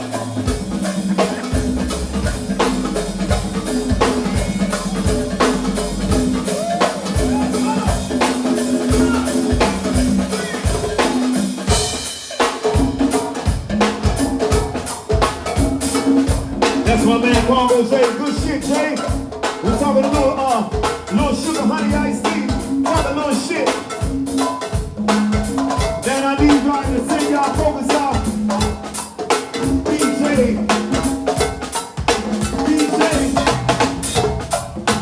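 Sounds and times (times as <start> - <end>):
bass line: 0.0 - 12.0, 13.6 - 18.8, 29.6 - 35.0
congas playing: 0.0 - 35.0
drum and percussion groove: 0.0 - 35.0.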